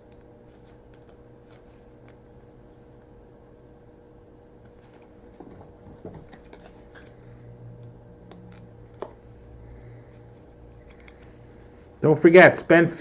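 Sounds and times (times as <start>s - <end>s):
low hum: 0.0s - 13.0s
trading cards rustling: 0.1s - 2.2s, 6.1s - 7.5s, 8.2s - 12.0s.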